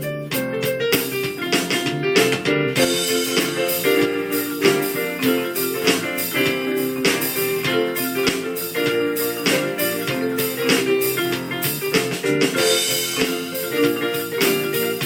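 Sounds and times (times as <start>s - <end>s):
keyboard playing chords and melody: 0.0s - 15.0s
steady beat: 0.0s - 15.0s.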